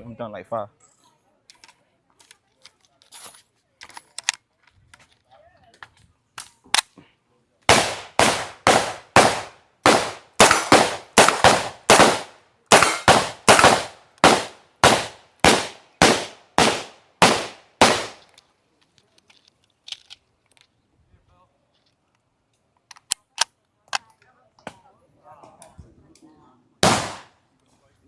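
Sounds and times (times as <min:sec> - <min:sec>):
echoing gunshots: 0:07.7 - 0:18.2, 0:26.8 - 0:27.3.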